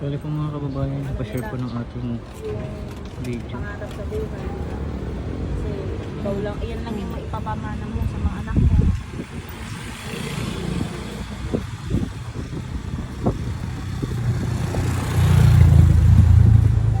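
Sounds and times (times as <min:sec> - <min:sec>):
street traffic: 0:00.0 - 0:17.0
vehicle engine running: 0:10.6 - 0:17.0.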